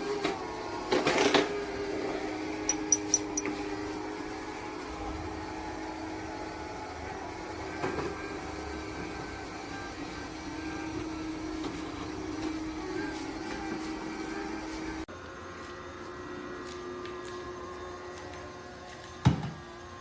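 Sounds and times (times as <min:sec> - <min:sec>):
rattle: 0:02.7 - 0:03.5.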